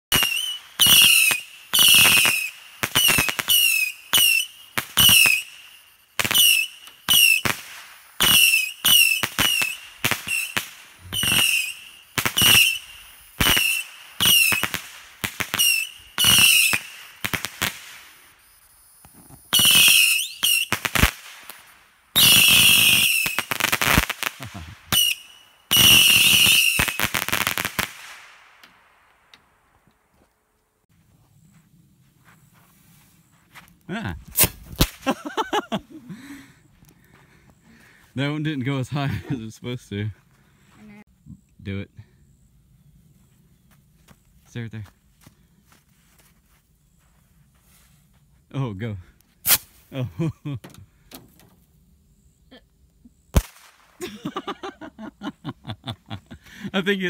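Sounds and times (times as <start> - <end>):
sharp pops: 0.1 - 18.2, 34.2 - 35.2, 49.4 - 49.8, 53.3 - 54.0
rockets whistling: 0.1 - 28.6, 34.2 - 35.6.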